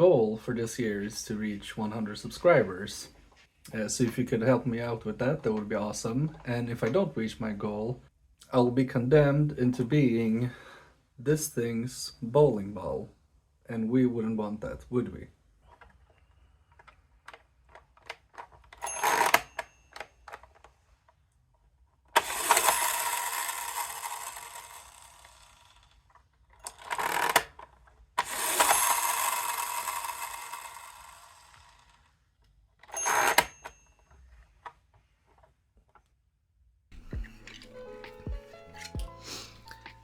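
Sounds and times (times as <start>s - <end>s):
toy mechanism rattling: 22.2s - 25.9s, 26.7s - 31.9s
toy levers clicking and clacking: 28.2s - 30.8s, 32.9s - 33.7s.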